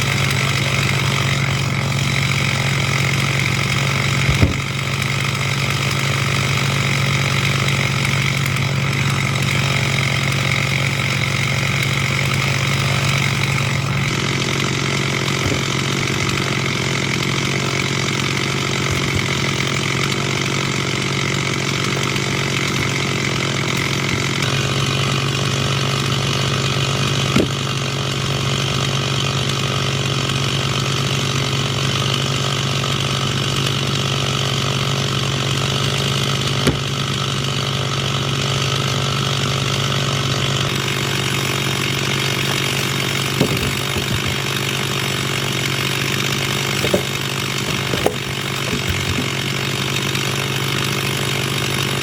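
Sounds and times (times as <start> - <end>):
chainsaw cutting wood: 0.0 - 52.0
brief knock: 4.3 - 4.6.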